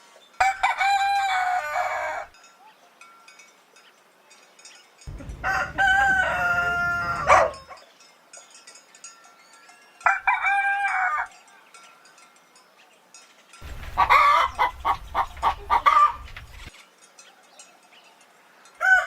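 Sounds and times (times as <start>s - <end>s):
rooster crowing: 0.4s - 2.3s, 5.1s - 7.8s, 10.1s - 11.3s, 13.6s - 16.7s, 18.8s - 19.0s.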